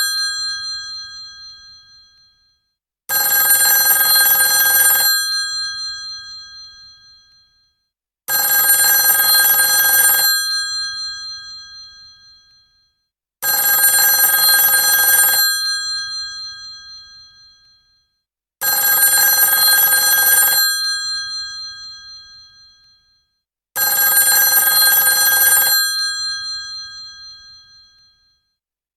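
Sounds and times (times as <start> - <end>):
old telephone bell ringing: 8.4 - 10.3, 13.7 - 15.6, 18.9 - 20.6, 23.8 - 27.9.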